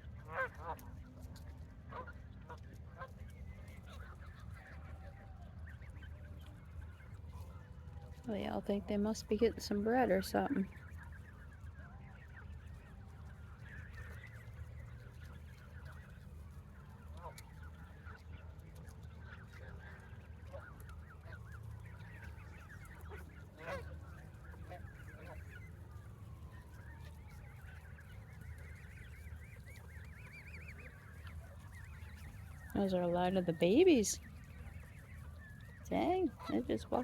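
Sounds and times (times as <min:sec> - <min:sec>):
geese honking: 0:00.0 - 0:01.2, 0:01.8 - 0:04.8, 0:08.2 - 0:37.0.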